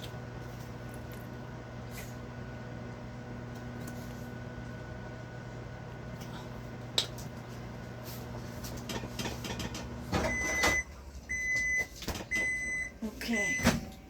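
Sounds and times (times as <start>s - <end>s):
microwave oven humming: 0.0s - 14.0s
microwave beeps: 9.8s - 14.0s.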